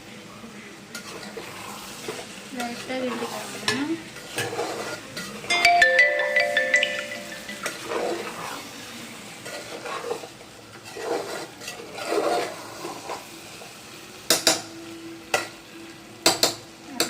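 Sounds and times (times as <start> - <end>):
light sizzle: 0.0 - 17.0
spoon stirring and scraping pan: 0.9 - 5.5, 7.6 - 8.8, 9.4 - 14.7.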